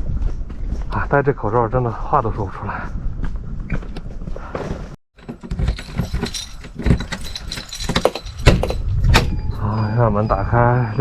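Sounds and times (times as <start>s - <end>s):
clicks and jangles of handling: 5.2s - 9.5s.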